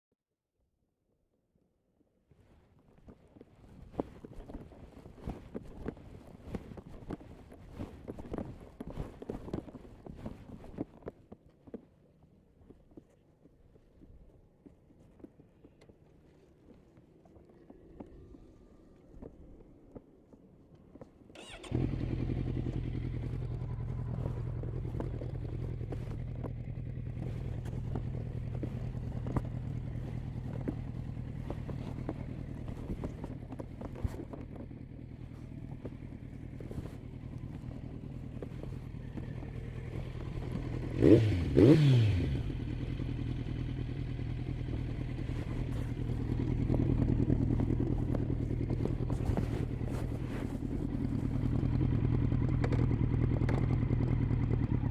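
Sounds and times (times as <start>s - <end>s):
motorcycle throttle blips: 17.2s - 54.9s
motorcycle engine idling: 21.3s - 54.9s.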